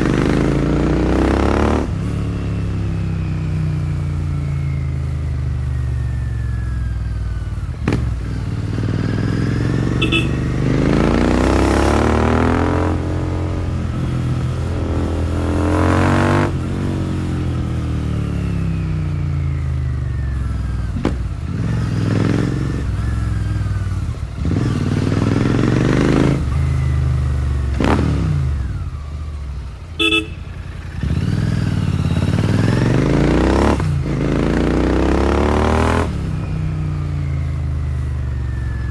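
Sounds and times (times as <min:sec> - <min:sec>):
motorcycle engine accelerating: 0:00.0 - 0:38.9
vehicle horn beeping: 0:09.8 - 0:10.8, 0:30.0 - 0:30.6.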